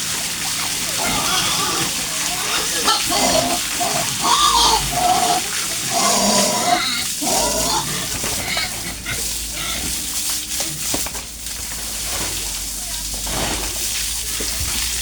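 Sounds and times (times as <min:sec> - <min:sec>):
pigs squealing and grunting: 0:00.6 - 0:10.2.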